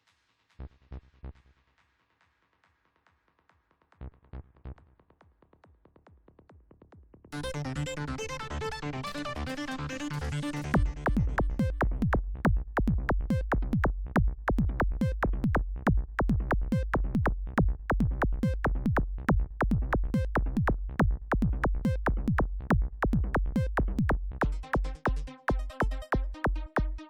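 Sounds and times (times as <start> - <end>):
deep bass: 0.6 - 1.5, 4.0 - 5.2, 7.3 - 27.0
fast kick drum: 10.8 - 27.0.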